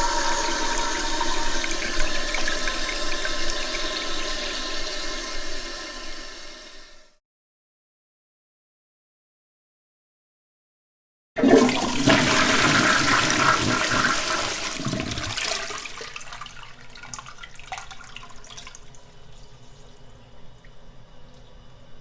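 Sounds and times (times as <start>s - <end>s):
water trickling as cistern refills: 0.0s - 6.5s, 11.5s - 22.0s
toilet flushing: 0.0s - 7.2s, 11.4s - 22.0s.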